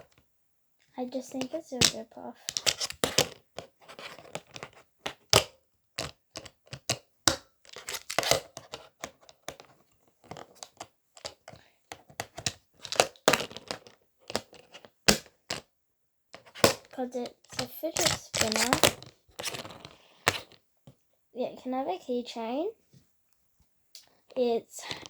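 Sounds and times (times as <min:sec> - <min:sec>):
crinkly handling noise: 0:01.3 - 0:05.3, 0:07.7 - 0:15.6, 0:16.4 - 0:21.0.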